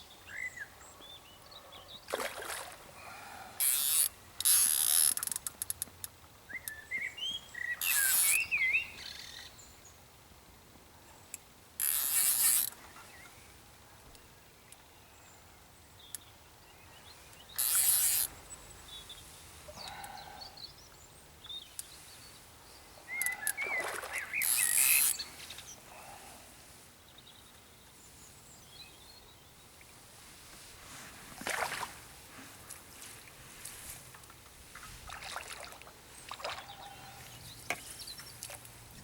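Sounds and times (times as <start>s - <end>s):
small birds chirping: 6.5s - 10.0s, 12.1s - 26.3s, 36.1s - 39.0s.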